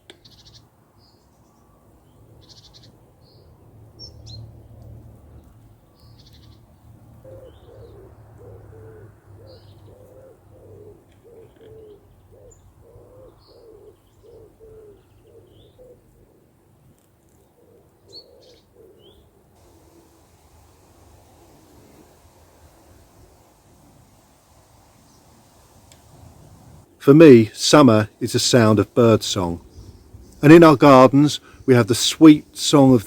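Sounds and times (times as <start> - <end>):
small birds chirping: 0.0 - 16.1, 17.4 - 26.9, 28.4 - 33.0
pigeon cooing: 7.2 - 16.5, 17.6 - 23.5.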